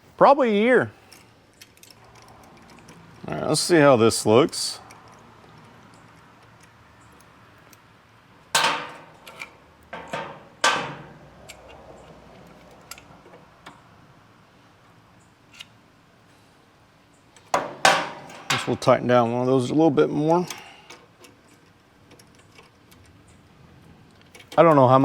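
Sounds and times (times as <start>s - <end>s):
metallic knocks and clinks: 8.5s - 13.8s, 17.4s - 18.9s.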